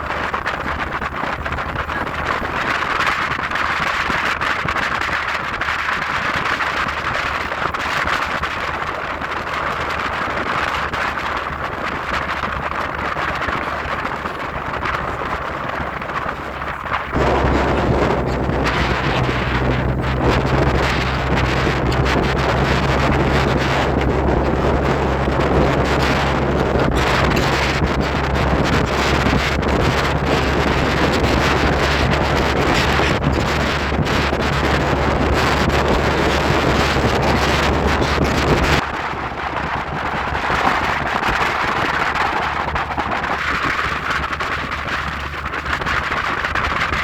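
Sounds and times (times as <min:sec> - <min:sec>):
wind buffeting microphone: 0:00.0 - 0:47.0
steady rain: 0:17.0 - 0:39.1.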